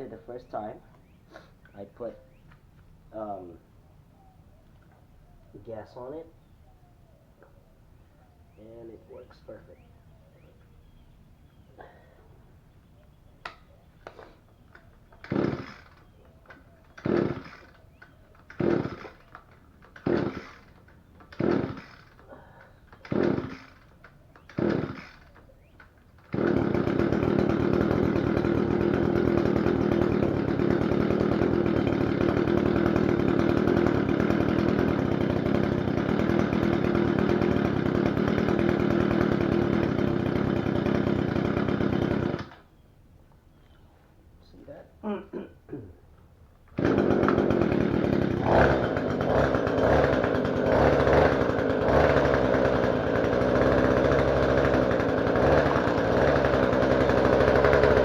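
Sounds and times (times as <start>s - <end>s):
recoil starter cord pulls: 13.4s - 42.7s, 46.6s - 58.0s
two-stroke engine running: 14.1s - 42.6s, 46.7s - 58.0s.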